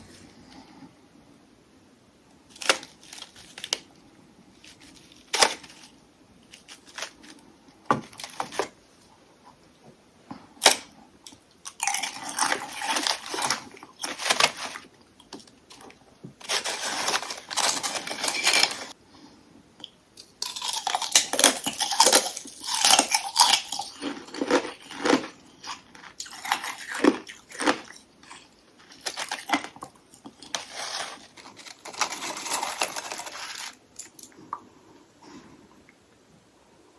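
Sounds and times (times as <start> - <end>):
crunching ice: 2.5 - 3.9, 4.6 - 8.8, 10.6 - 19.0, 20.4 - 34.3
ice cracking when bitten: 20.4 - 28.0.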